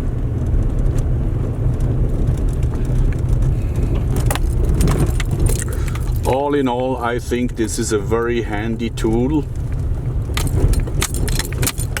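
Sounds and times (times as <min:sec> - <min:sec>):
car engine and tyre rumble: 0:00.0 - 0:12.0
light rattling clicks: 0:09.0 - 0:12.0.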